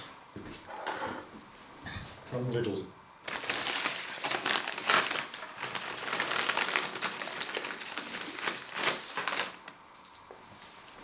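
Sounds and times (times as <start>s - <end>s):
crisp packet crinkling: 3.2s - 10.2s.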